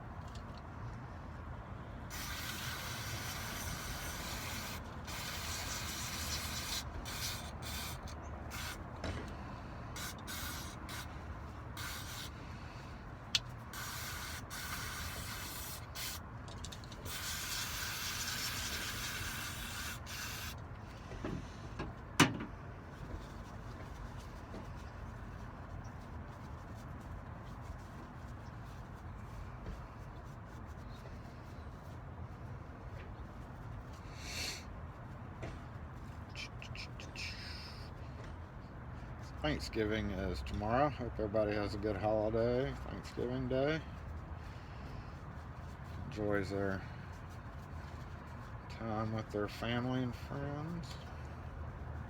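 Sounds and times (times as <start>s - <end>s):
aerosol spray hissing: 2.1s - 8.8s, 10.0s - 11.1s, 11.8s - 12.4s, 13.7s - 16.2s, 17.1s - 20.6s.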